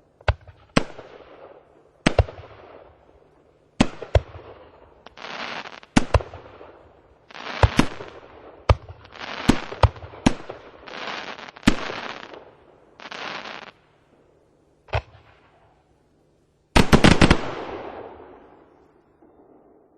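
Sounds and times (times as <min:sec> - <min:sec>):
firework bangs: 0:03.8 - 0:13.8, 0:16.8 - 0:19.6
firework hissing bursts: 0:05.0 - 0:06.1, 0:07.3 - 0:08.2, 0:09.0 - 0:12.4, 0:13.0 - 0:13.8.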